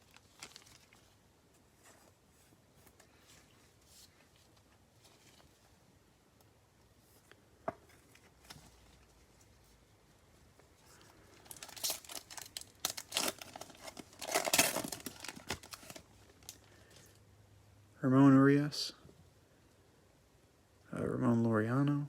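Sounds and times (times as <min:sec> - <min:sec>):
wrapper tearing and crinkling: 0:00.0 - 0:01.2, 0:11.4 - 0:16.7.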